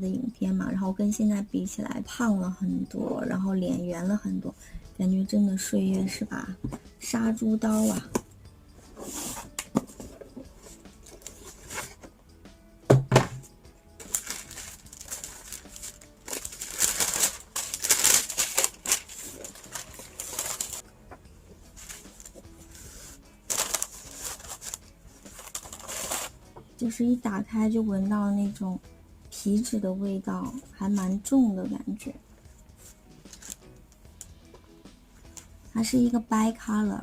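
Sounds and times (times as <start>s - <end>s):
paper rustling and crinkling: 9.0s - 12.0s, 14.0s - 20.8s, 21.8s - 26.4s, 32.8s - 33.6s.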